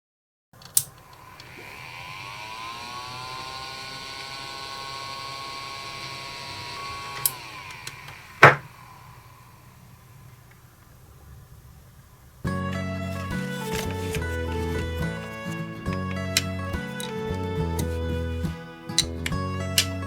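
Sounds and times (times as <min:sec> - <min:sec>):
ventilation fan motor whine: 0:00.9 - 0:12.5
sharp loud knock: 0:08.4 - 0:08.7.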